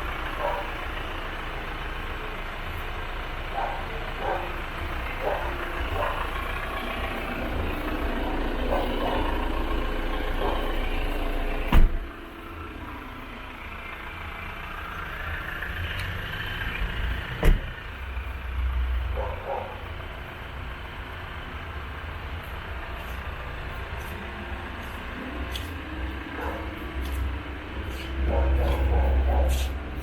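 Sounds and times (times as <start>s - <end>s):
vehicle rumble: 0.0s - 30.0s.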